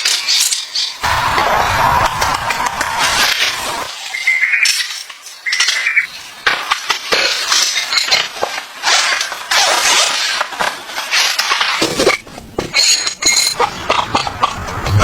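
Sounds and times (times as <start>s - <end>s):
objects rustling and knocking: 6.4s - 15.0s.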